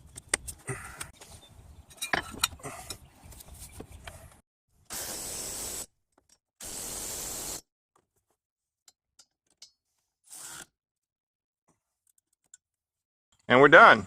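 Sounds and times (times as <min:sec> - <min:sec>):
metal tools clinking: 0:01.9 - 0:03.0
hissing bursts: 0:04.9 - 0:05.9, 0:06.6 - 0:07.6.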